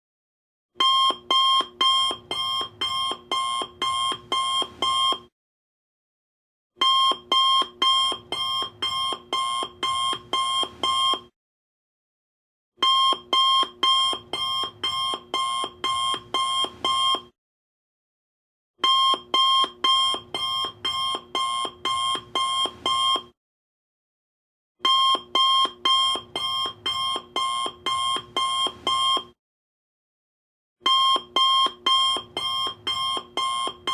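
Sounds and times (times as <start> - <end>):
alarm clock beeping: 0.8 - 5.2, 6.8 - 11.3, 12.8 - 17.2, 18.8 - 23.3, 24.9 - 29.3, 30.9 - 33.9.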